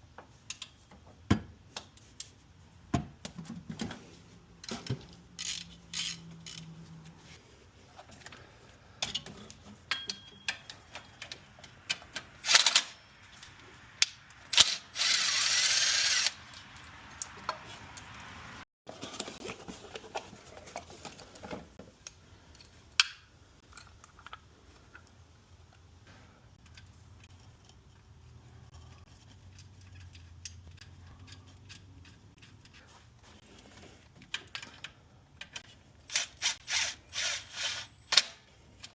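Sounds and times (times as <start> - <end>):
tools and metal parts clicking: 4.6 - 6.9, 9.0 - 18.2, 26.6 - 32.9, 34.1 - 36.6
power tool running: 14.6 - 16.4.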